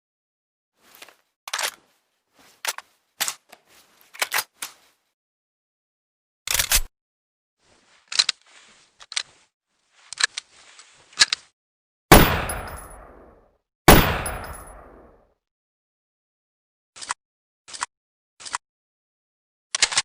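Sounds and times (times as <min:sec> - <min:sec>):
burst of gunshots: 0:12.1 - 0:13.2, 0:13.9 - 0:15.1
loud single gunshots with echo: 0:12.1 - 0:13.2, 0:13.9 - 0:15.1.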